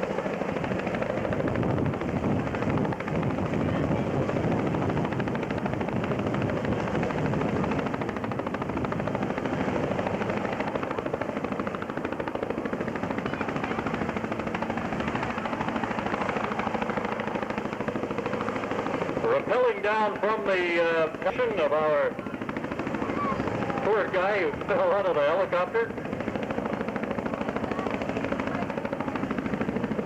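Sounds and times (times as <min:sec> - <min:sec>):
helicopter rotors chopping: 0:00.0 - 0:30.0
turbine engine noise: 0:00.0 - 0:30.0.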